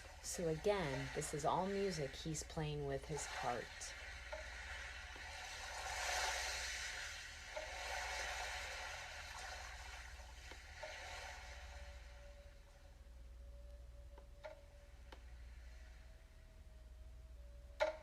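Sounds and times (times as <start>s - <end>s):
soft airy ambient music: 0.0s - 18.0s
steady low hum: 0.0s - 18.0s.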